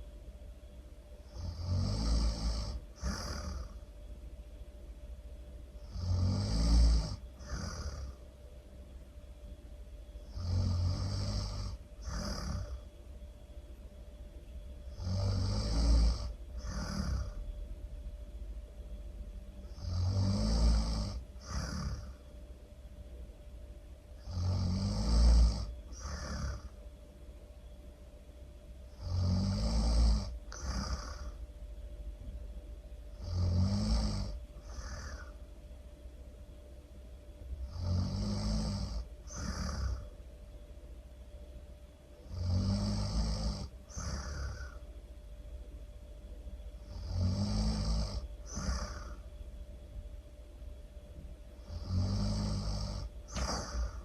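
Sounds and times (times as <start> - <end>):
loud snoring: 1.2 - 3.9, 5.8 - 8.2, 10.2 - 12.9, 14.9 - 17.5, 19.6 - 22.2, 24.2 - 26.8, 28.9 - 31.4, 33.1 - 35.4, 37.6 - 40.2, 42.2 - 44.8, 46.8 - 49.3, 51.6 - 54.0.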